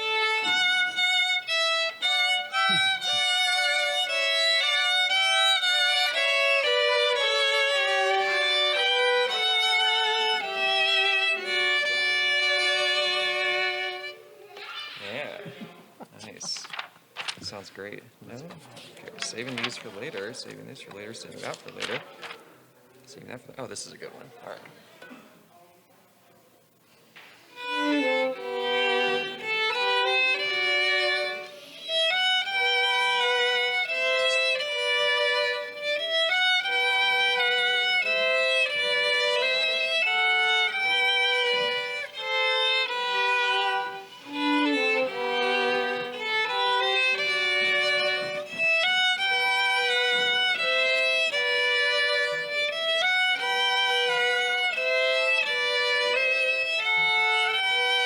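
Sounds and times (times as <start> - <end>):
violin playing slow melody: 0.0 - 14.4, 27.5 - 58.0.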